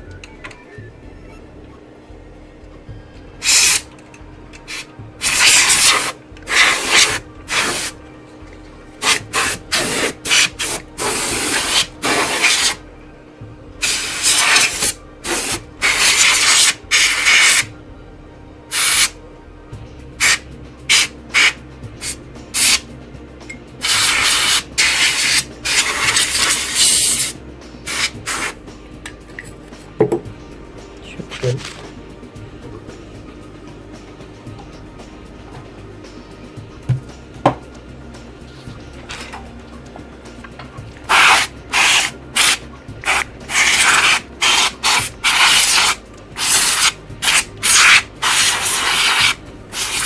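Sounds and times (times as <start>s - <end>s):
compressed air duster hissing: 3.4s - 3.9s, 4.7s - 8.0s, 9.0s - 12.8s, 13.8s - 17.7s, 18.7s - 19.2s, 20.2s - 22.9s, 23.8s - 28.6s, 41.1s - 50.0s.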